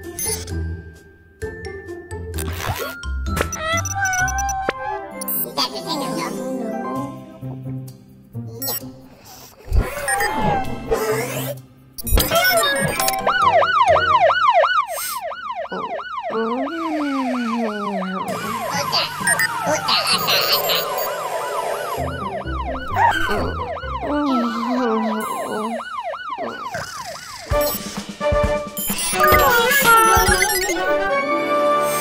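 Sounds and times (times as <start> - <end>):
music: 0.0 - 14.3, 21.9 - 24.1, 27.5 - 32.0
cartoon sound effects: 2.4 - 6.5, 9.7 - 13.6, 14.9 - 27.6, 29.0 - 31.0
fire engine siren: 12.8 - 27.6.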